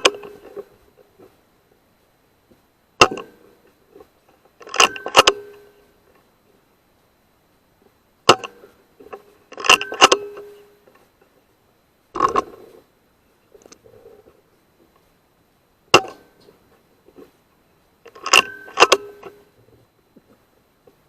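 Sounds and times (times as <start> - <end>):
air rifle firing and cycling: 0.0 - 0.6, 3.0 - 3.5, 4.6 - 5.7, 8.3 - 10.7, 15.9 - 16.4, 18.1 - 19.4.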